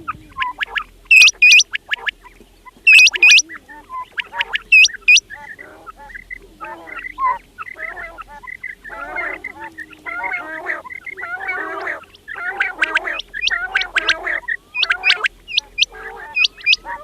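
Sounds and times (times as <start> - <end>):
quails chattering: 0.0 - 17.0
high whistled notes: 1.1 - 1.6, 2.9 - 3.4.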